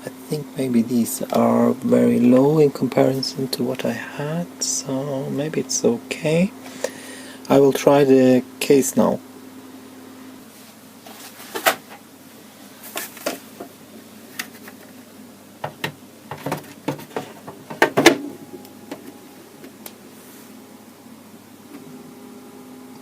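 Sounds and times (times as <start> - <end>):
cooling fan hum: 0.0 - 23.0
plastic case clicks and knocks: 15.6 - 18.2.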